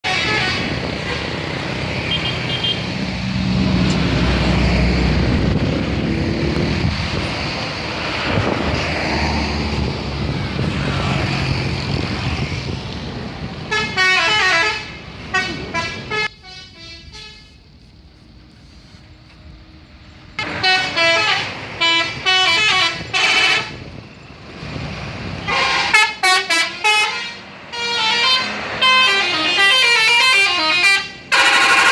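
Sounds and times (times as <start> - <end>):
multi-tone musical bus horn: 0.0 - 3.0, 13.6 - 17.7, 20.4 - 24.0, 25.3 - 31.9
bus engine running: 0.0 - 31.9
road noise: 0.0 - 31.9.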